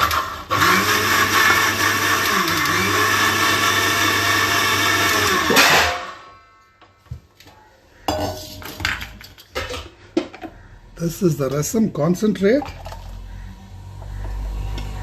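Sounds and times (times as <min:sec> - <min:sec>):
electric blender running: 0:00.0 - 0:05.6.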